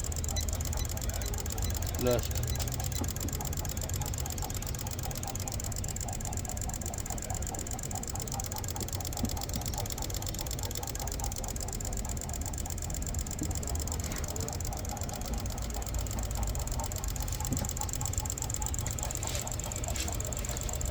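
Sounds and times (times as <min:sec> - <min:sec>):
car engine idling: 0:00.0 - 0:20.9.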